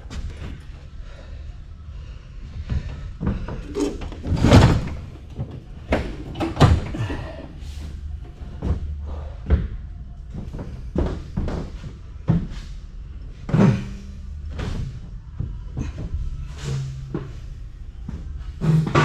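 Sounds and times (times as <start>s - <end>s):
steady low hum: 0.0s - 19.0s
heavy metal parts knocking: 2.6s - 7.5s.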